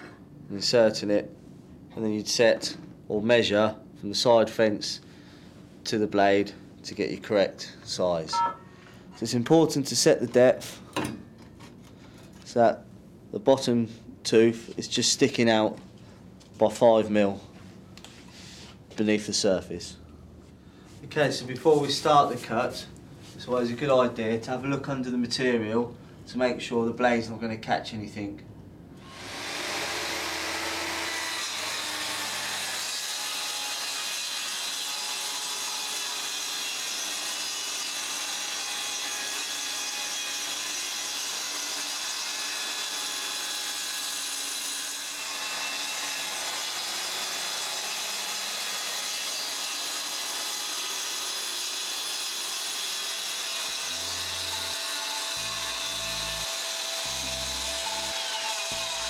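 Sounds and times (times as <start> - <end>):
circular saw cutting wood: 29.0 - 59.0.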